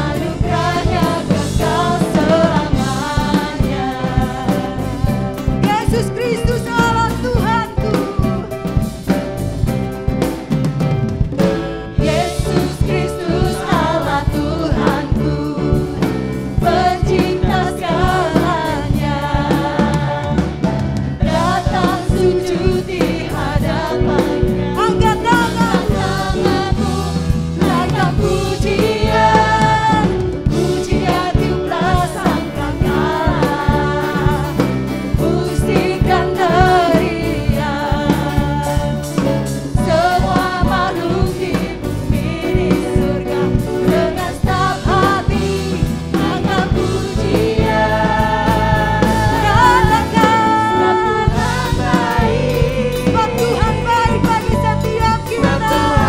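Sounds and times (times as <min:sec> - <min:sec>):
band with drums: 0:00.0 - 0:56.0
group singing worship song: 0:00.0 - 0:56.0.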